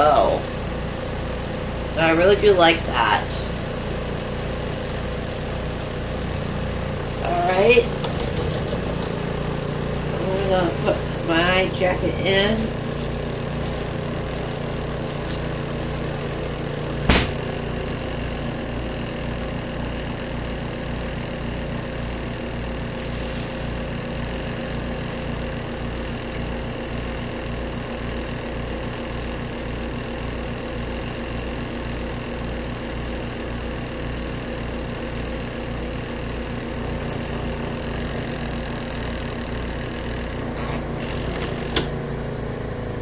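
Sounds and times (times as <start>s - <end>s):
washing machine motor throbbing: 0.0s - 43.0s
sharp knock: 17.1s - 17.4s.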